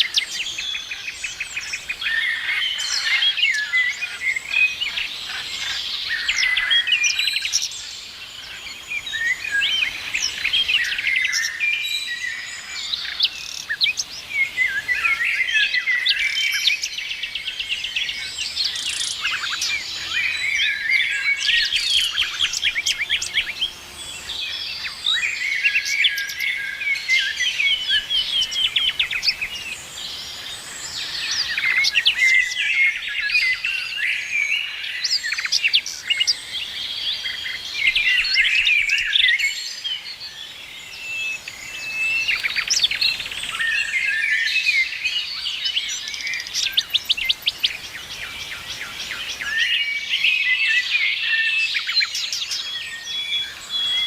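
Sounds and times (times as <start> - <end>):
songbirds chirping and singing: 0.0 - 54.0.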